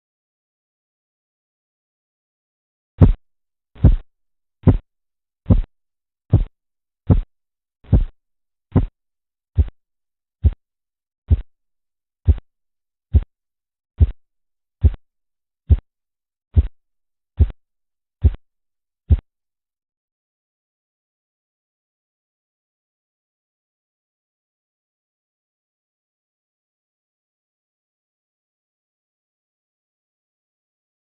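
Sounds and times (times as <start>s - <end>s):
heartbeat tapping through stethoscope: 3.0s - 3.2s, 3.8s - 4.9s, 5.5s - 5.7s, 6.3s - 6.5s, 7.1s - 9.0s, 9.6s - 9.8s, 11.3s - 11.6s, 12.2s - 12.5s, 13.1s - 13.3s, 14.0s - 14.2s, 14.8s - 15.0s, 15.7s - 15.9s, 16.6s - 16.8s, 17.4s - 17.6s, 18.2s - 18.4s, 19.1s - 19.3s.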